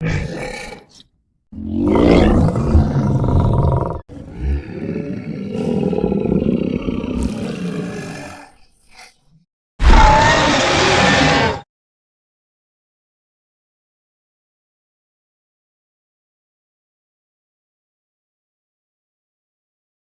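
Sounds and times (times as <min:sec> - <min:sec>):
dinosaur roar: 0:00.0 - 0:01.0, 0:01.6 - 0:09.2, 0:09.8 - 0:11.6.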